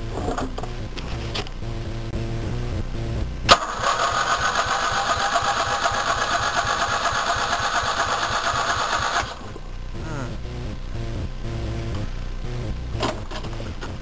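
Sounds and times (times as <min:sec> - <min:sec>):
engine starter cranking: 0:03.5 - 0:09.5.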